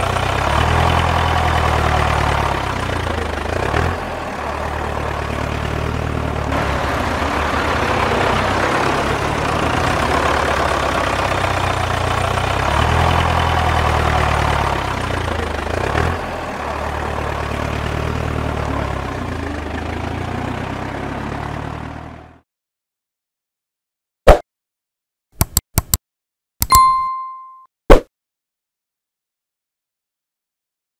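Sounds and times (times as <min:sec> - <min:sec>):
tractor engine running: 0:00.0 - 0:22.4.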